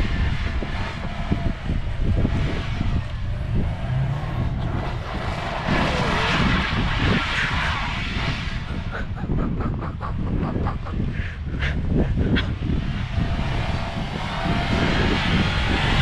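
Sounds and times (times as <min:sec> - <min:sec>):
hissing wind rush: 0:00.0 - 0:16.0
wind buffeting microphone: 0:00.0 - 0:16.0.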